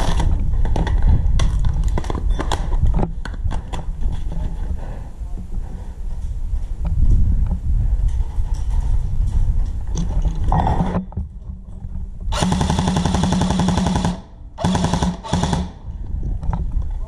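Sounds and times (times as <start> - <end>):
handling rumble on microphone: 0.0 - 12.3, 15.9 - 17.0
wind noise on microphone: 0.0 - 17.0
airsoft rifle firing bursts: 12.4 - 15.8.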